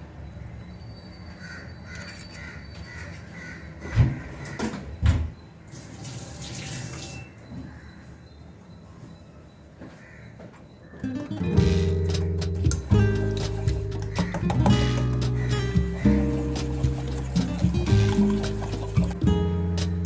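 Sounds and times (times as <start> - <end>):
crows cawing faintly: 0.4 - 5.0, 7.4 - 11.4, 12.1 - 19.2
tap running: 11.1 - 19.2
dull thumps: 11.4 - 19.2.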